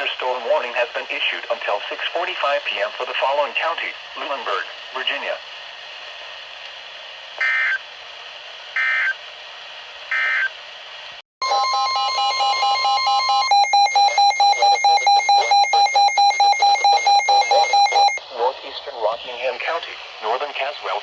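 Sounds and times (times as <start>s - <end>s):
electronic alert tone: 11.4s - 18.2s
fast pulsing multi-pitch beep: 11.4s - 18.2s
warbling data-burst beeps: 11.4s - 18.2s.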